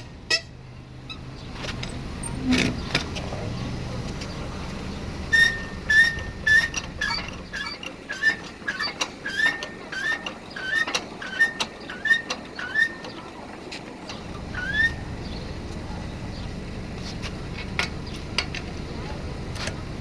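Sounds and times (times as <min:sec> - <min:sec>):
floor jack squeaking and clicking: 0:01.1 - 0:15.4.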